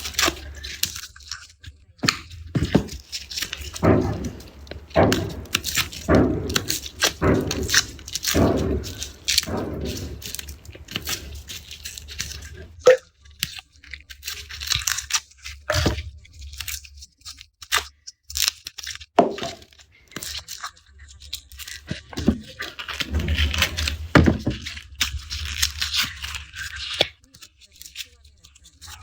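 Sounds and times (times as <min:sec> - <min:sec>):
garlic skins crackling and tearing: 0:00.0 - 0:01.5, 0:02.1 - 0:12.8, 0:13.5 - 0:15.6, 0:16.4 - 0:19.1
heavier knocks: 0:02.6 - 0:12.8, 0:23.0 - 0:24.6.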